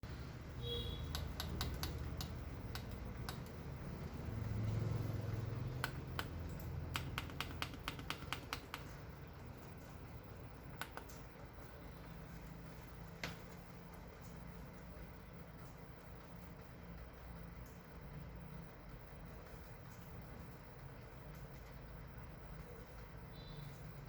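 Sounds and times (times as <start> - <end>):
sharp irregular clicks: 1.0 - 3.8, 5.4 - 11.8.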